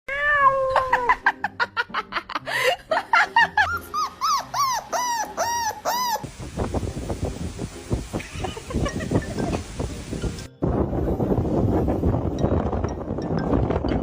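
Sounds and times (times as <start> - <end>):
background music: 0.1 - 14.0
dog yelping: 3.7 - 6.3.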